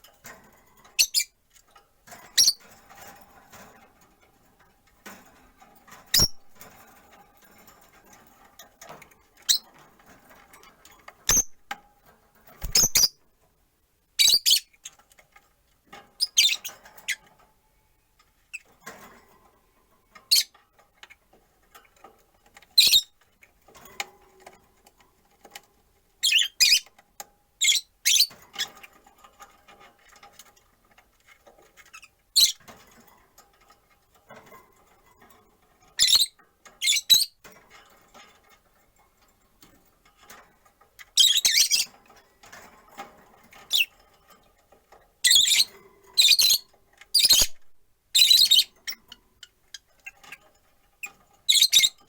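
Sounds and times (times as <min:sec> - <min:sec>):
lovebirds chirping: 0:11.3 - 0:11.6, 0:12.6 - 0:13.2, 0:48.2 - 0:48.7.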